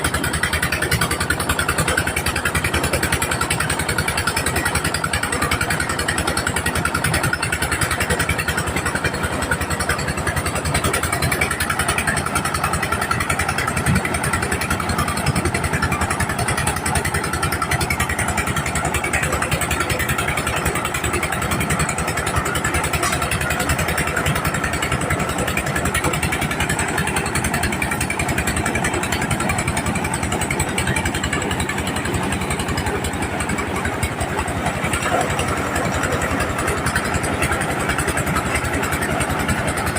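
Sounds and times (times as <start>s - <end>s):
engine firing rhythmically: 0.0s - 39.9s.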